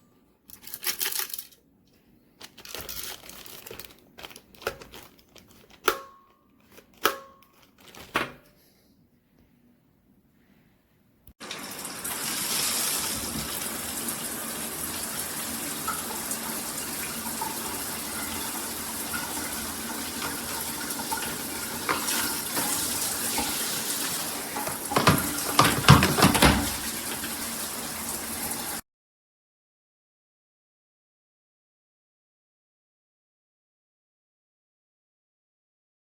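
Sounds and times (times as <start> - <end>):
shower water spraying: 11.4 - 28.8.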